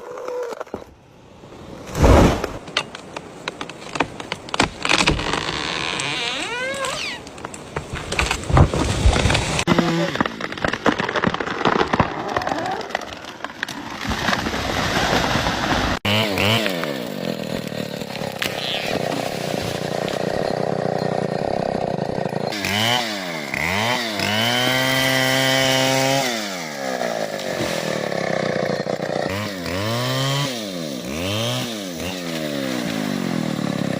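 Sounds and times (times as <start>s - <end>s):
dense crackling rush: 7.2s - 16.0s
chainsaw revving: 16.0s - 33.9s.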